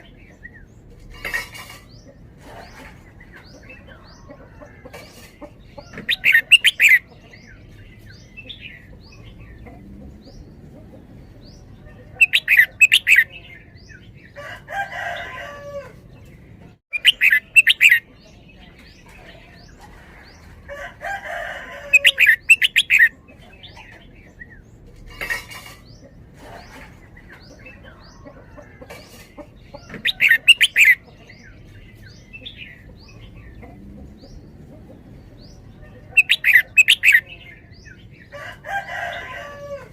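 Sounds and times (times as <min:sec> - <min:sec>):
soft rough bird sounds: 0:00.0 - 0:39.9
bird singing quick phrases: 0:11.5 - 0:14.2, 0:16.9 - 0:19.7.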